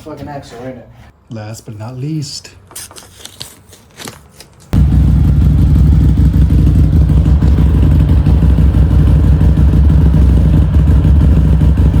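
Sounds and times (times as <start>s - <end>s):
motorcycle engine idling: 4.8s - 12.0s.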